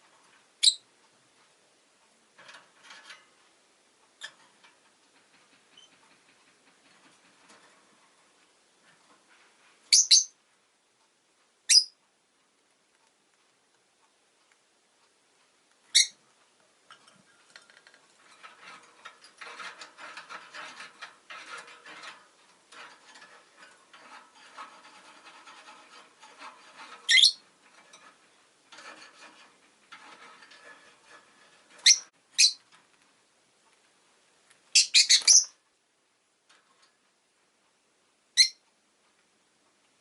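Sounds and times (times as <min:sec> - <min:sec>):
bird chirping: 0:00.6 - 0:00.8, 0:09.9 - 0:10.4, 0:11.7 - 0:12.0, 0:15.9 - 0:16.2, 0:27.1 - 0:27.4, 0:31.8 - 0:32.6, 0:34.7 - 0:35.6, 0:38.4 - 0:38.6
scratchy rustling: 0:17.0 - 0:32.2.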